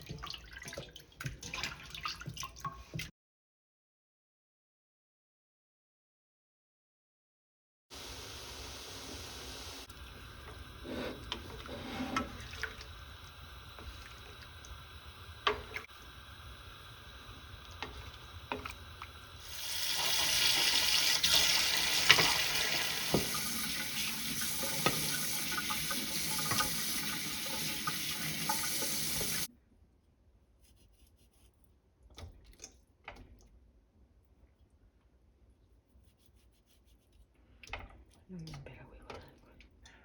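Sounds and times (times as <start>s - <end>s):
tap running water into sink: 9.8s - 29.5s.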